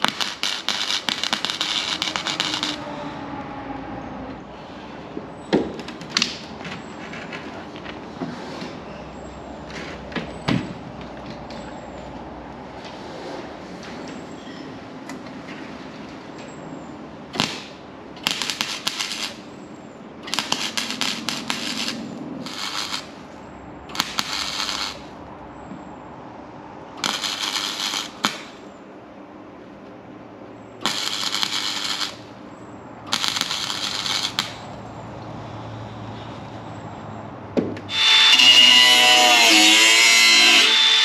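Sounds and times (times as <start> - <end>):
welder crackling: 0.0 - 2.9, 17.4 - 19.5, 20.2 - 25.2, 27.0 - 28.7, 30.8 - 32.4, 33.1 - 34.8.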